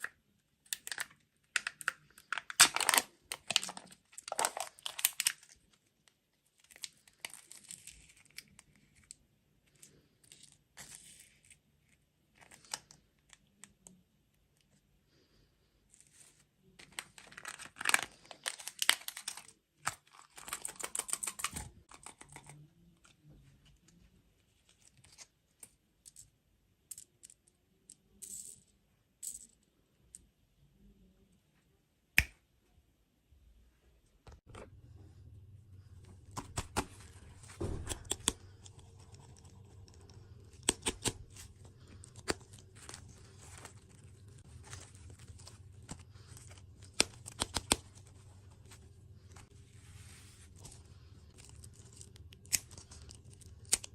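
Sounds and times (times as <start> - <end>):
wrappers crinkling and tearing: 0.7 - 5.8, 16.8 - 22.2.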